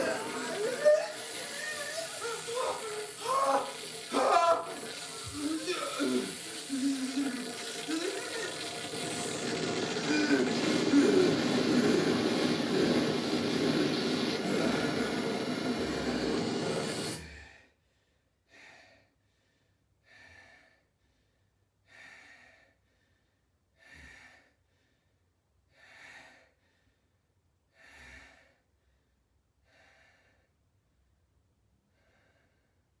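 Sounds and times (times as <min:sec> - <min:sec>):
person breathing slowly: 0:09.0 - 0:30.6, 0:31.9 - 0:32.9.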